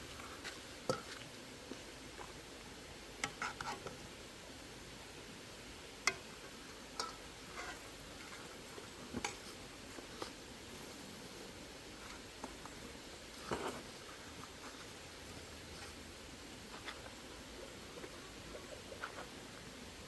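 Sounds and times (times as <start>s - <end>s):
faint steady background noise: 0.0s - 20.0s
cooking utensils clicking and tapping: 3.2s - 4.0s, 6.0s - 8.4s.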